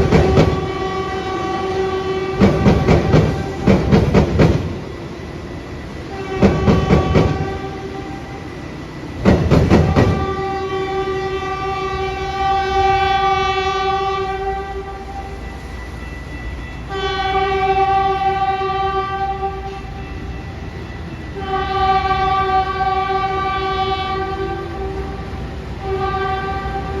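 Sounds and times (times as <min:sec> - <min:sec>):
train horn blasts: 0:00.0 - 0:04.4, 0:06.1 - 0:08.5, 0:09.5 - 0:27.0
train wheels clacking: 0:00.0 - 0:10.6.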